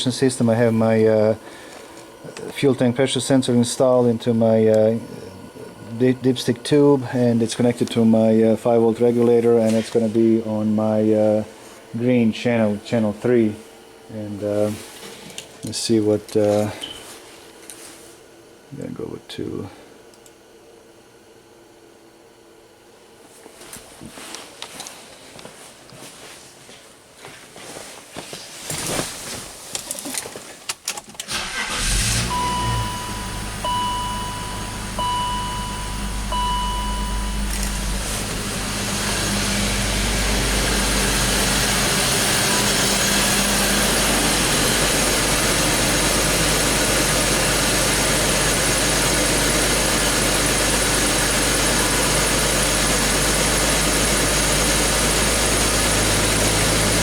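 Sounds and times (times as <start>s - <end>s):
car engine starting and idling: 31.2s - 57.0s
dashboard warning chime beeping: 31.6s - 41.6s.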